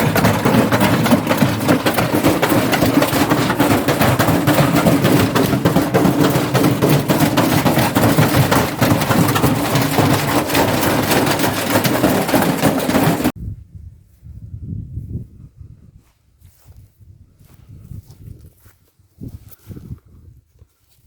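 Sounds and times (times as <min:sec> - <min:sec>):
metal clattering in washing machine: 0:00.0 - 0:13.4.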